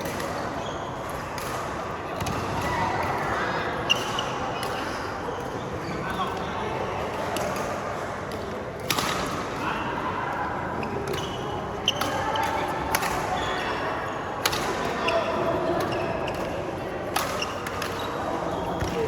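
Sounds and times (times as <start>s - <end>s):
background chatter: 0.0s - 19.0s
racket hitting shuttlecock: 8.8s - 9.5s, 11.0s - 13.3s, 14.4s - 15.0s, 15.8s - 18.2s.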